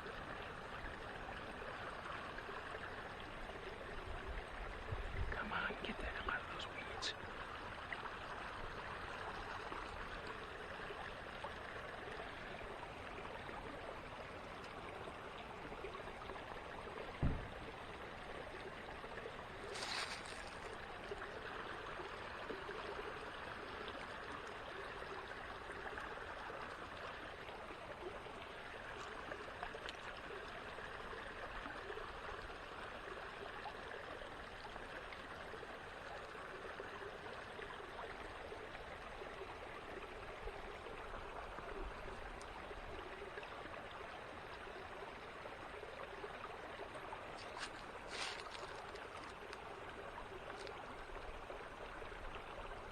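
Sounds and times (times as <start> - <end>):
creek water running: 0.0 - 52.9
low thump: 17.2 - 17.5.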